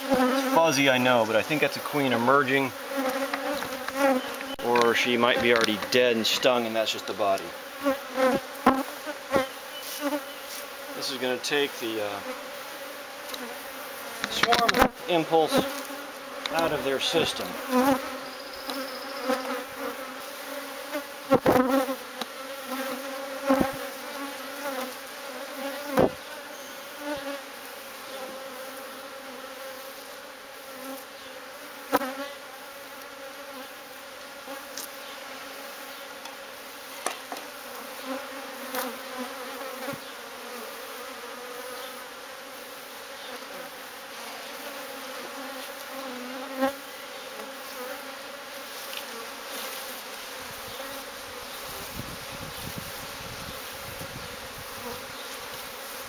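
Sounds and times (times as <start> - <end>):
bees buzzing: 0.0 - 56.0.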